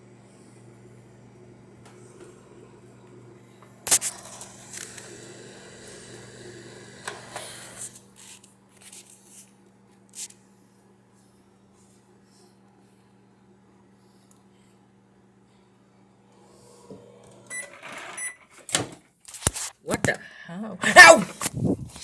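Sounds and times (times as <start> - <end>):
microwave oven hum: 0.0 - 19.0
discs crackling and popping: 3.9 - 5.2, 19.3 - 19.8.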